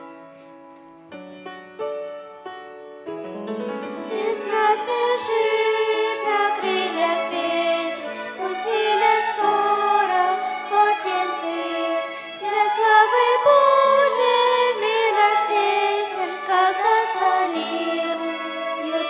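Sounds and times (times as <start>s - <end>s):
violin: 2.8s - 19.0s
choir singing a hymn: 4.0s - 19.0s.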